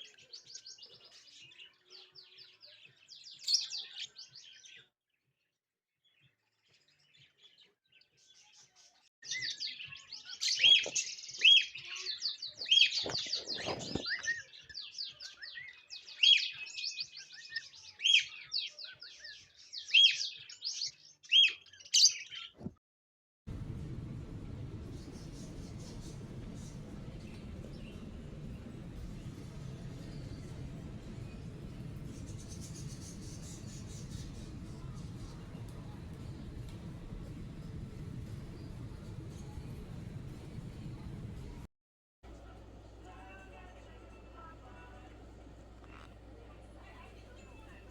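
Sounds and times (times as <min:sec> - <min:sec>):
small birds chirping: 0:00.0 - 0:04.9, 0:06.0 - 0:22.7, 0:23.5 - 0:41.7, 0:44.1 - 0:47.9
low rumble: 0:23.5 - 0:41.7.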